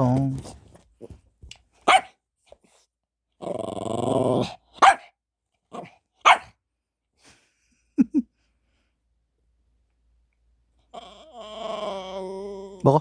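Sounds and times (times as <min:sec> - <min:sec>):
dog barking: 0:01.8 - 0:02.2, 0:04.8 - 0:05.1, 0:05.8 - 0:06.6
dog growling: 0:03.4 - 0:04.7, 0:10.8 - 0:13.0.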